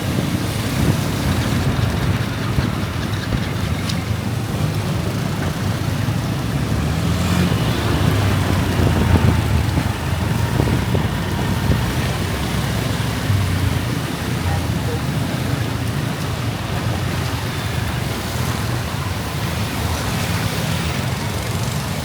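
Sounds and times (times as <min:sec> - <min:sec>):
road traffic rumble: 0:00.0 - 0:22.0.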